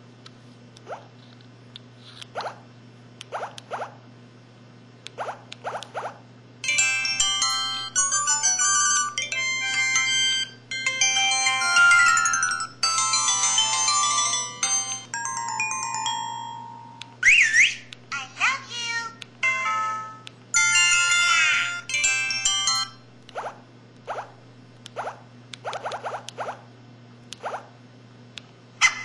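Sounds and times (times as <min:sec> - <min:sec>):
electronic ringtone melodies: 0:06.6 - 0:17.2, 0:19.4 - 0:23.0.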